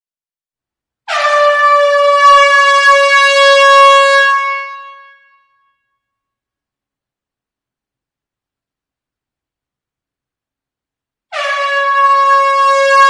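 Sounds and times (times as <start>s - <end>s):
long loud horn blast: 1.1s - 5.3s, 11.3s - 13.0s.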